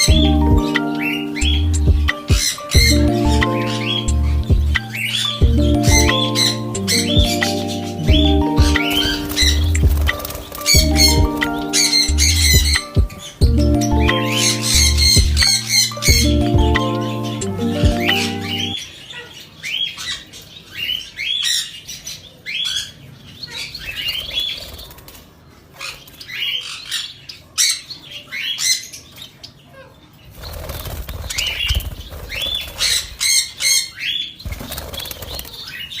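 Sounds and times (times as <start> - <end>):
budgerigars chirping: 4.9 - 11.2.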